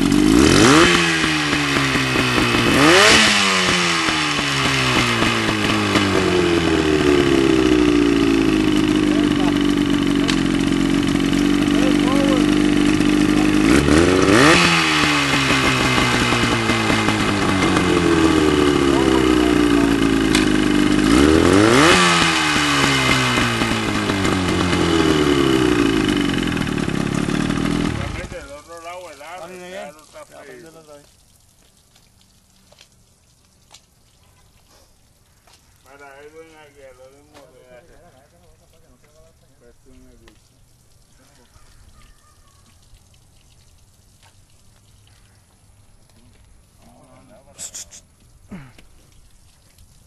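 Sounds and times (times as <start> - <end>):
outboard motor revving: 0.0 - 29.9.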